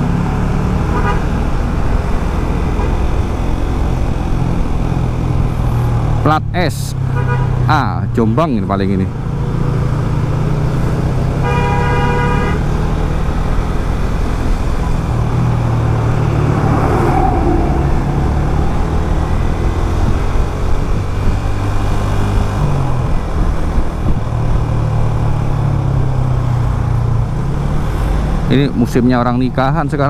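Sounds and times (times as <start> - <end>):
vehicle horn: 0.8 - 1.4, 2.7 - 3.1, 7.1 - 7.7, 11.4 - 12.8.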